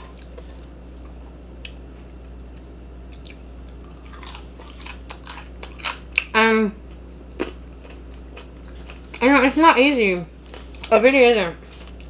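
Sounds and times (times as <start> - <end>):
low steady hum: 0.0 - 12.0
person chewing food: 2.4 - 6.3, 7.4 - 9.2, 10.4 - 10.9.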